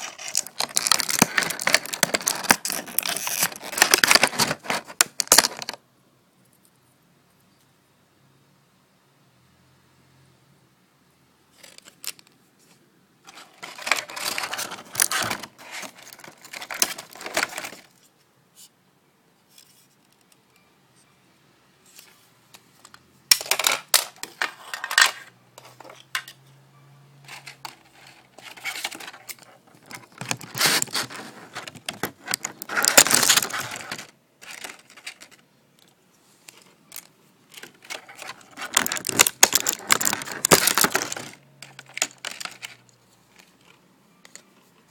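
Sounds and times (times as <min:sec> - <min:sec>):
plastic toy pieces clattering: 0:00.0 - 0:05.8, 0:13.3 - 0:18.0, 0:22.8 - 0:26.4, 0:27.3 - 0:35.9, 0:36.5 - 0:44.4.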